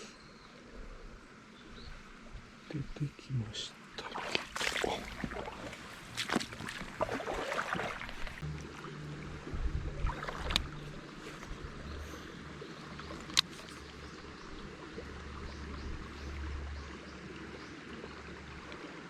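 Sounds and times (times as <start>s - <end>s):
river water rushing: 4.0s - 15.5s
wind on microphone: 9.3s - 12.0s.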